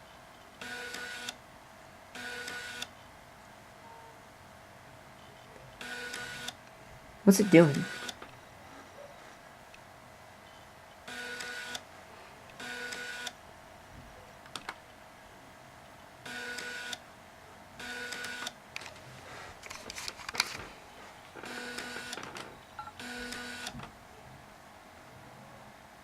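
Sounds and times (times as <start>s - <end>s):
floppy drive buzzing: 20.5s - 24.0s.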